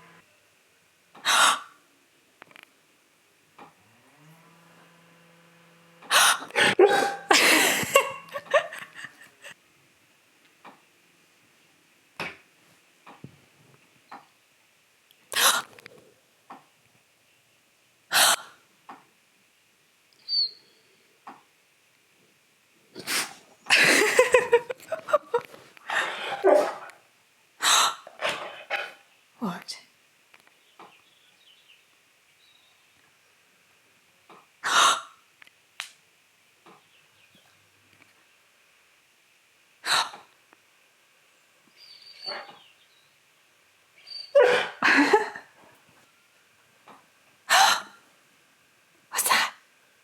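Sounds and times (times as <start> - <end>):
dog barking: 26.2 - 27.0, 42.3 - 42.6, 44.4 - 44.8.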